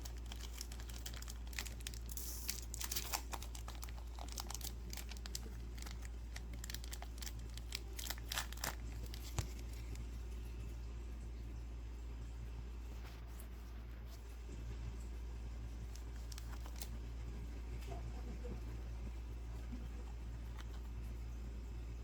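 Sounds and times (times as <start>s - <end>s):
foil wrapper tearing and crinkling: 0.0s - 10.0s, 15.9s - 16.9s.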